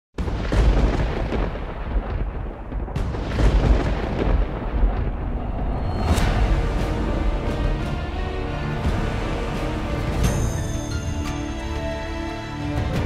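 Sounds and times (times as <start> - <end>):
sharp thunder crack: 0.2 - 10.6
thunder rumbling: 0.2 - 10.8.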